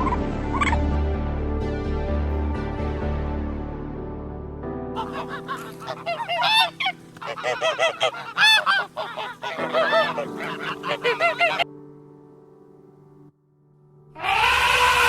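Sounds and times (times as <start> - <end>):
birds calling: 5.0 - 11.7.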